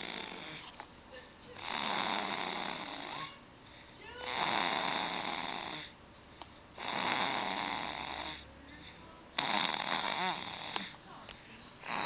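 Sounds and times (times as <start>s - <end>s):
breathy snoring: 0.0s - 0.8s, 1.6s - 3.4s, 4.2s - 6.0s, 6.7s - 11.0s, 11.8s - 12.0s.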